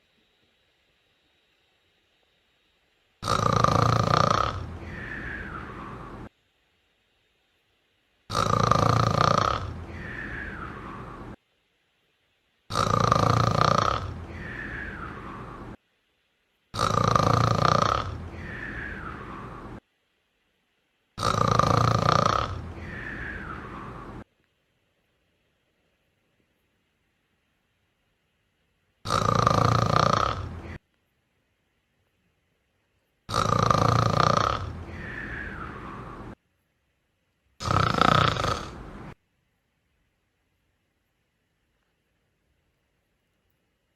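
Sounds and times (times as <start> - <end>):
cat snoring: 3.2 - 6.3, 8.3 - 11.4, 12.7 - 15.8, 16.8 - 19.8, 21.2 - 24.2, 29.0 - 30.8, 33.3 - 36.4, 37.6 - 39.2.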